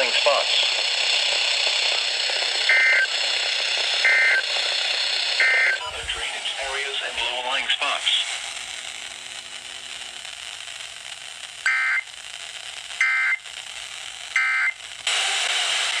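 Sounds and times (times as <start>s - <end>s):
radio hiss: 0.0s - 16.0s.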